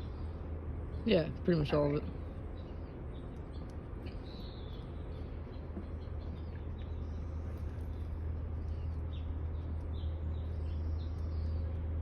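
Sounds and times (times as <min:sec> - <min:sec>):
low background hum: 0:00.0 - 0:12.0
faint bird chirps: 0:02.3 - 0:11.8.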